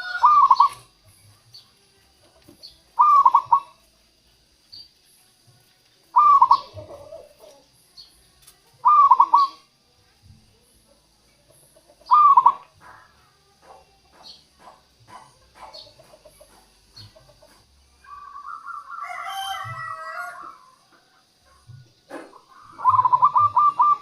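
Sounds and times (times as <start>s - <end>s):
dove cooing: 0.0s - 0.9s, 3.0s - 3.8s, 6.1s - 7.8s, 8.8s - 9.7s, 12.0s - 16.6s, 22.1s - 24.0s.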